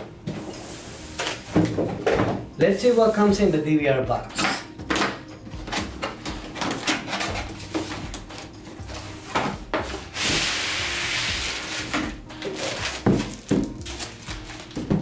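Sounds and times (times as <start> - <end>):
cardboard box knocks and rustles: 13.0 - 13.7.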